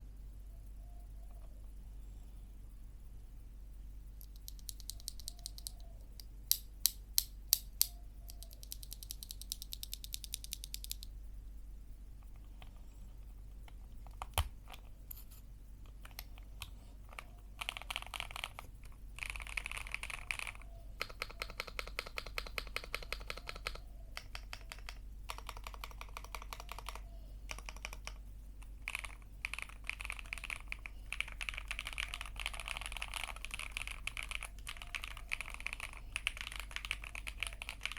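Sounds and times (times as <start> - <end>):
mechanical keyboard typing: 4.2 - 5.9, 7.2 - 11.1, 15.9 - 28.2, 28.8 - 37.9.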